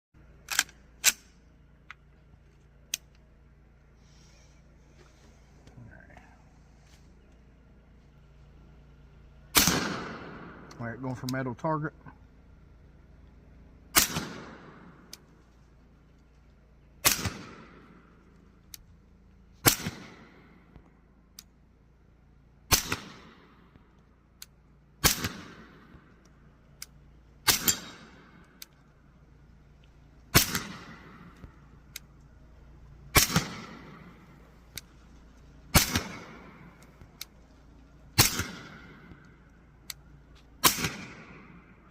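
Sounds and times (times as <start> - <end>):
gunshots with ringing tail: 9.5 - 11.2, 13.9 - 15.2, 17.0 - 18.2, 19.6 - 20.7, 22.7 - 23.8, 25.0 - 26.1, 27.4 - 28.6, 30.3 - 31.7, 33.1 - 34.5, 35.7 - 36.8, 38.2 - 39.4, 40.6 - 41.9.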